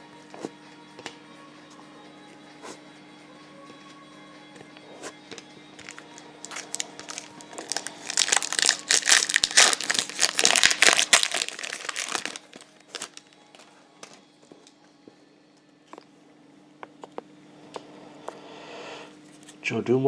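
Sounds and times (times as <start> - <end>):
wrapper tearing and crinkling: 5.8 - 13.4.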